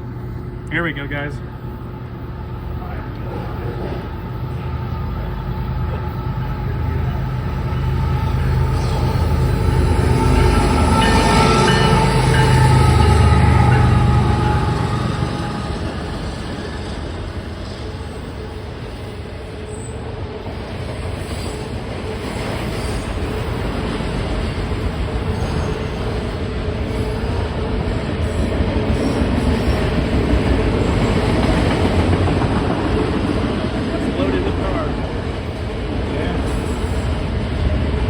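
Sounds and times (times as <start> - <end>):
freight train wheels rumbling: 0.0 - 38.0.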